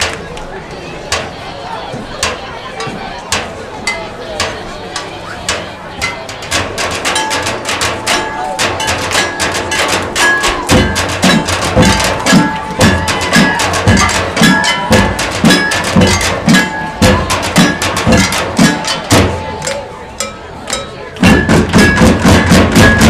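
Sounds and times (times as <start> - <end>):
tuned bass drums striking: 5.5 - 23.0.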